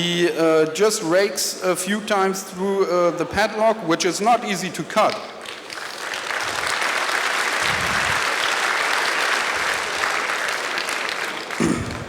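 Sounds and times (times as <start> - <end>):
audience applauding: 5.2 - 12.0.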